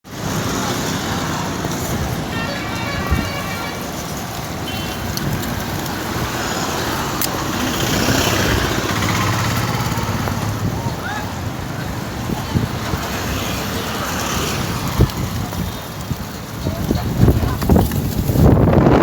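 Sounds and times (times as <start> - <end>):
heavy rain pouring: 0.1 - 19.0
brief high tone: 2.3 - 4.0.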